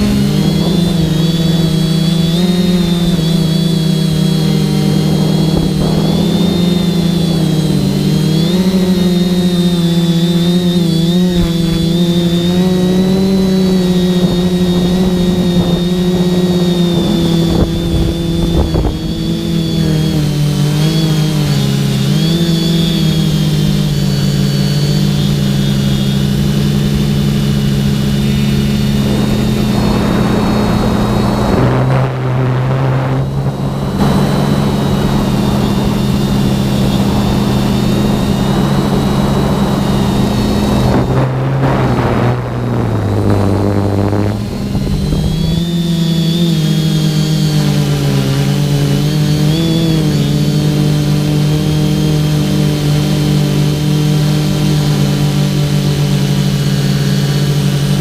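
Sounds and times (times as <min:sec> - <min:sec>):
rushing air: 0:00.0 - 0:08.9, 0:23.9 - 0:46.3
drone propellers buzzing whine: 0:00.0 - 0:58.0.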